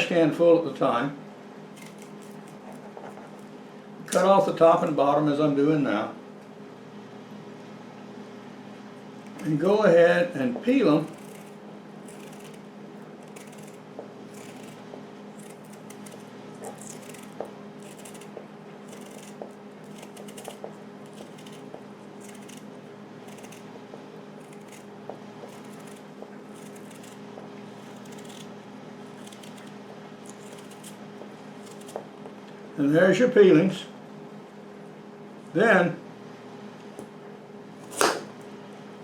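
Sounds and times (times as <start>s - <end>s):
steady low hum: 0.0s - 39.0s
blade scraping pear skin: 1.7s - 3.5s, 9.2s - 32.1s, 37.8s - 38.5s.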